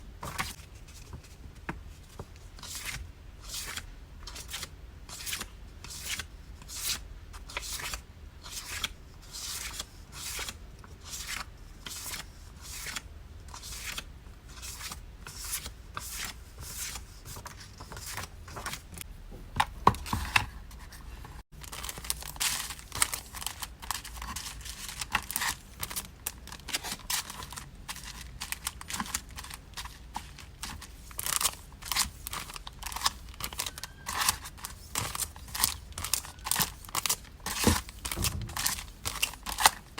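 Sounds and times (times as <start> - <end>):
packaging crinkling and tearing: 21.6 - 39.9.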